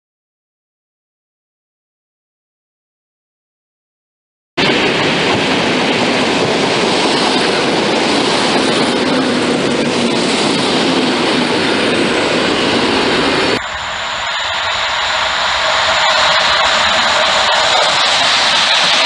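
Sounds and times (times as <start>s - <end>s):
train running past on rails: 4.6s - 19.0s.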